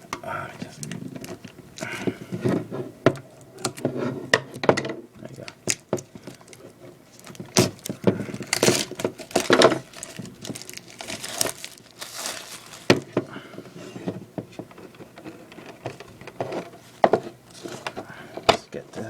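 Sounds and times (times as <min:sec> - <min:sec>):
plastic packaging crinkling: 0:05.2 - 0:13.3.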